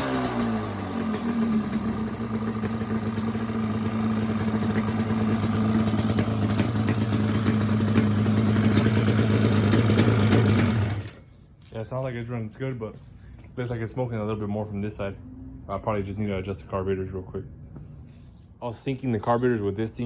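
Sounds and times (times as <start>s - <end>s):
two-stroke engine idling: 0.0s - 11.2s.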